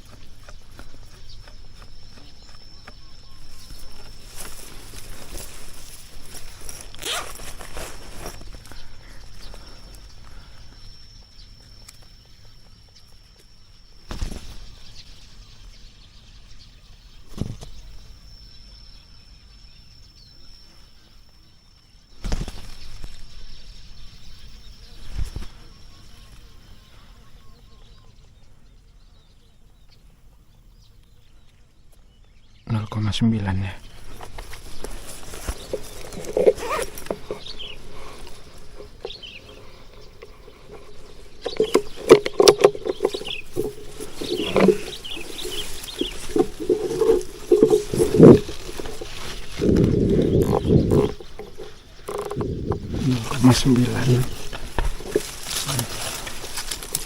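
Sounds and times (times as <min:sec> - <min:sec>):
lower pitched bird call: 0:22.4 - 0:57.0
high bird chirps: 0:32.3 - 0:57.0
wind rumbling on microphone: 0:33.8 - 0:57.0
clicks and rustles: 0:33.9 - 0:57.0.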